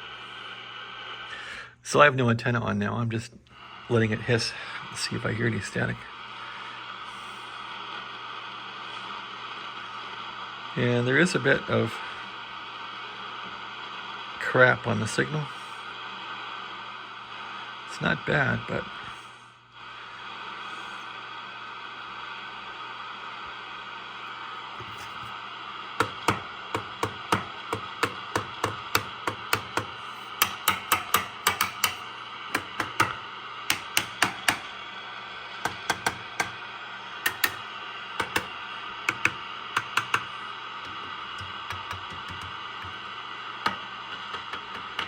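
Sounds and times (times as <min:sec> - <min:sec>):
radio receiver hissing: 0:00.0 - 0:01.8, 0:03.3 - 0:45.0
sharp tapping knocks: 0:26.0 - 0:34.6, 0:35.6 - 0:36.6, 0:38.2 - 0:38.5, 0:39.1 - 0:40.3, 0:41.4 - 0:43.0.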